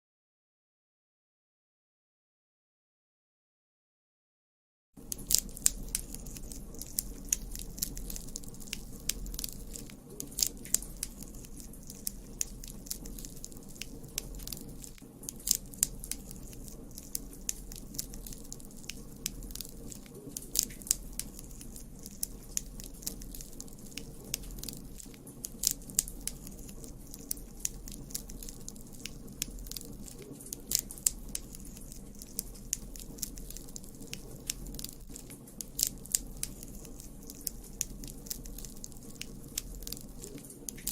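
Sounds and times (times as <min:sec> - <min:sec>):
campfire crackling and popping: 0:05.0 - 0:40.9
low fire rumble: 0:05.0 - 0:40.9.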